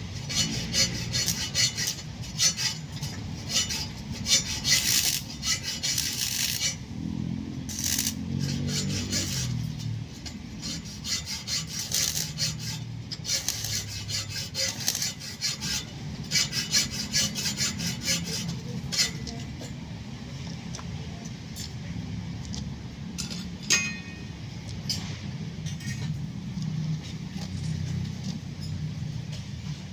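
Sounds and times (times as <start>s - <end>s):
hand tool scraping a hard surface: 0.2s - 6.8s, 7.7s - 19.8s.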